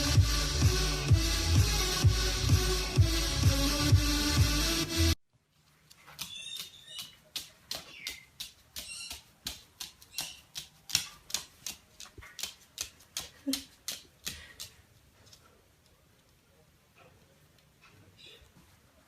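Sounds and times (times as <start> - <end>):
bird chirps: 6.2 - 9.3, 10.1 - 10.6.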